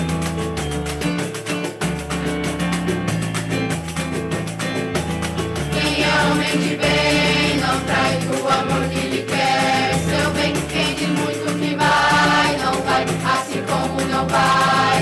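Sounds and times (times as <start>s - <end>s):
instrumental accompaniment: 0.0s - 15.0s
choir singing: 5.7s - 15.0s.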